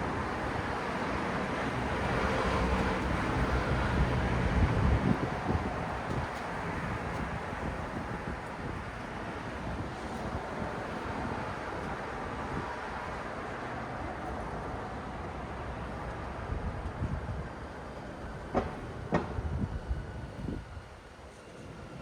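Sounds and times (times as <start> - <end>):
road traffic rumble: 0.0 - 22.0
sharp knocks: 18.5 - 19.4.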